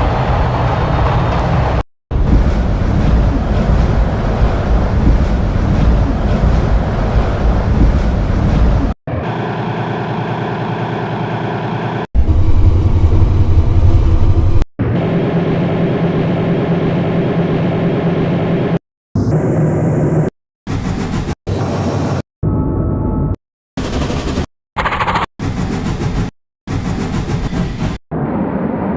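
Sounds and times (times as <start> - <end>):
train engine droning: 0.0 - 8.4, 9.3 - 14.6
train rumbling: 0.0 - 9.0, 11.4 - 14.7.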